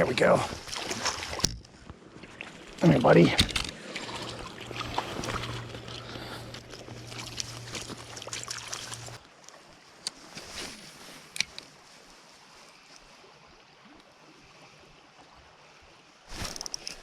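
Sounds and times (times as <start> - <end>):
creek running: 0.0 - 9.5
water splashing and sloshing: 0.0 - 14.5.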